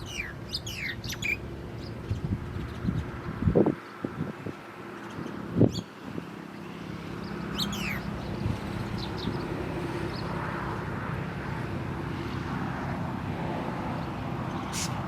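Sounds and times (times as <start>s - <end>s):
bird chirps: 0.0s - 3.1s, 6.6s - 8.4s
low engine hum: 0.0s - 15.0s.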